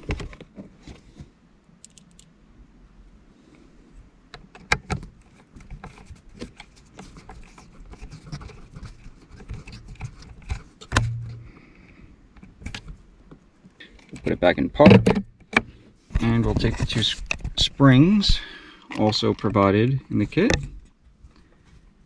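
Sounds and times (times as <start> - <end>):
small metallic clicks and taps: 1.8 - 2.3
short low hum: 10.9 - 11.8
loud knock: 11.0 - 11.5.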